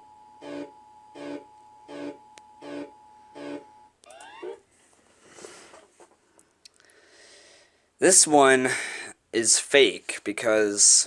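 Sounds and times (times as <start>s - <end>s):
pulsed low alarm tone: 0.0s - 4.6s.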